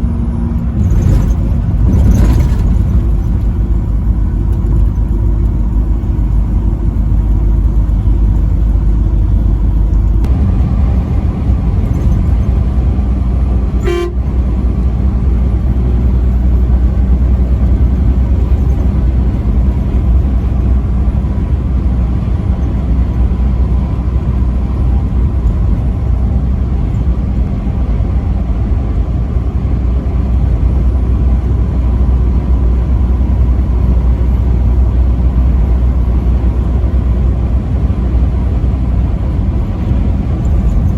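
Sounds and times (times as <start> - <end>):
truck driving rumble: 0.0 - 40.9
truck horn toot: 13.7 - 14.4.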